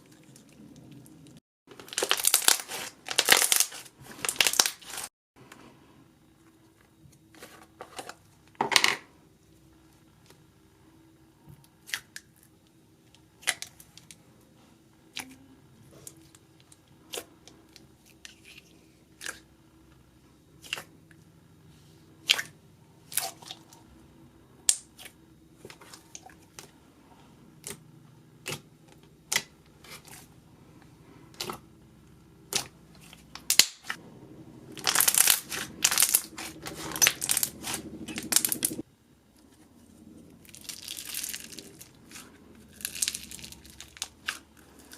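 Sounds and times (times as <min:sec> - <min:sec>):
slime crackling: 0:01.8 - 0:05.1, 0:34.7 - 0:38.8, 0:40.5 - 0:44.9.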